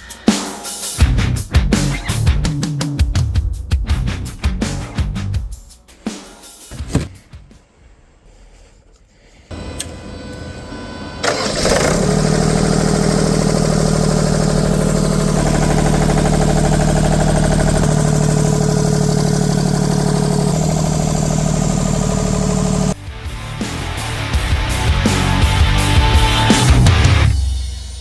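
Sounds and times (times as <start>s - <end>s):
diesel engine cranking: 9.5s - 23.0s
diesel engine running: 9.5s - 23.0s.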